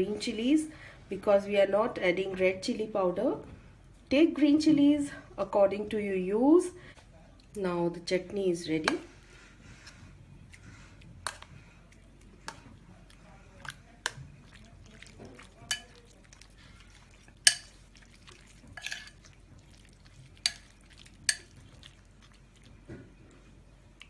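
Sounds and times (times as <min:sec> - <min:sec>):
spoon clinking against a bowl: 0:15.0 - 0:16.2, 0:17.4 - 0:17.8, 0:18.8 - 0:19.4, 0:20.4 - 0:21.6.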